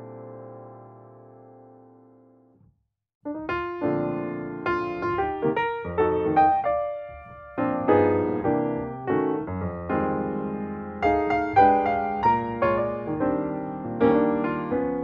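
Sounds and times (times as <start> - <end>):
piano music: 0.0 - 2.4, 3.3 - 15.0.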